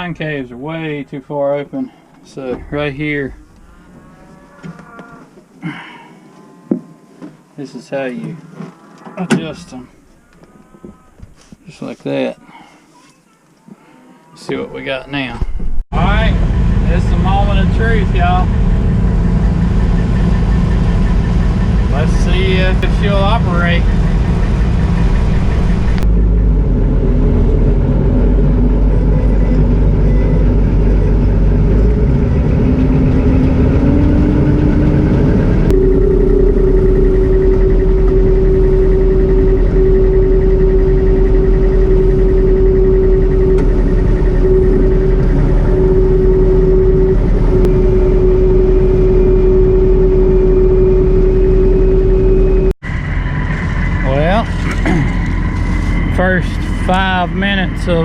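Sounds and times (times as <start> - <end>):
combine engine rumble: 0.0 - 6.4, 14.7 - 58.0
threshing machinery whine: 16.0 - 58.0.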